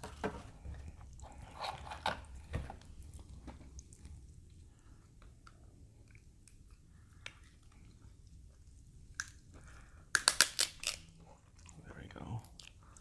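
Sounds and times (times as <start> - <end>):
quiet chewing: 0.8 - 10.1, 11.1 - 13.0
crab shell cracking: 10.1 - 11.1.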